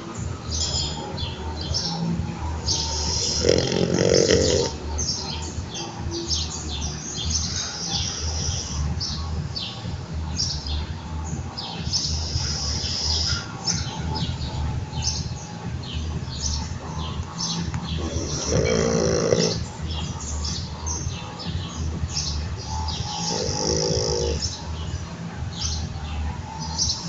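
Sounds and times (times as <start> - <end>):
small birds chirping: 0.0 - 27.0.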